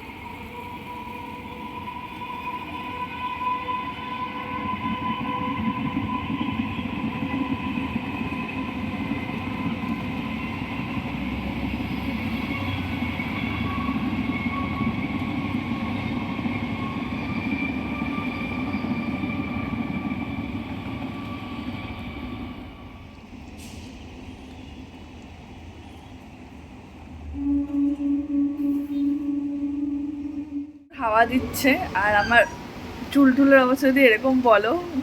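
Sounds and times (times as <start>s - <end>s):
train rumbling past: 0.0s - 35.0s
high squealing tones: 31.8s - 32.9s.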